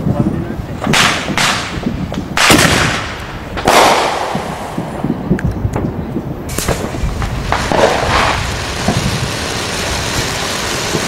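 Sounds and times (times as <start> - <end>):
fireworks booms: 0.1 - 11.0
faint fireworks pops: 0.8 - 11.0.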